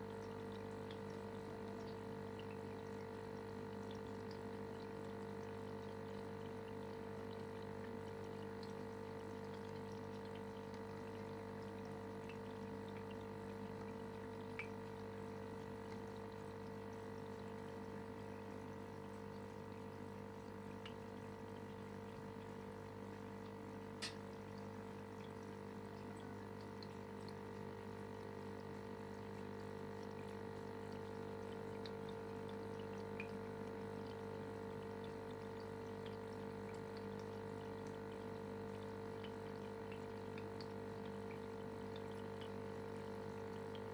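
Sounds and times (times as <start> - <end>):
aquarium filter pump humming: 0.0 - 43.9
trickling water: 0.0 - 43.9
sharp click: 24.0 - 24.2.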